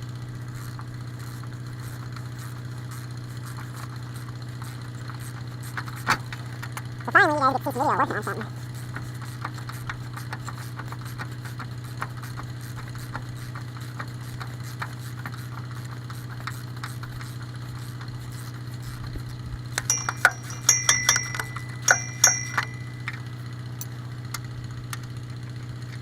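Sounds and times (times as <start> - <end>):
wrenches clinking on metal: 19.9 - 23.9.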